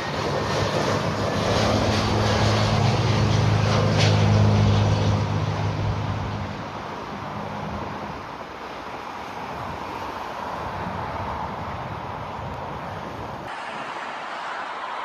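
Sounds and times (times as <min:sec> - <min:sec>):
jet engine low hum: 0:00.0 - 0:09.0
steady rushing noise: 0:00.0 - 0:15.0.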